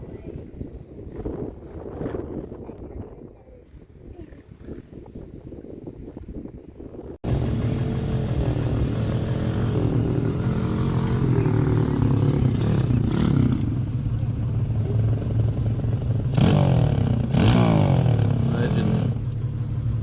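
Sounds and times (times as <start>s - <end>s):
faint wind: 0.0s - 20.0s
off-road vehicle engine running: 7.2s - 20.0s.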